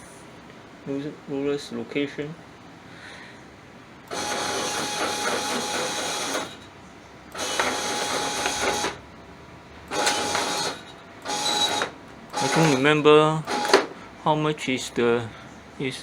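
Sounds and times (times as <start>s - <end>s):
stepper motor whirring: 4.1s - 6.7s, 7.3s - 9.0s, 9.9s - 12.9s, 13.5s - 13.9s.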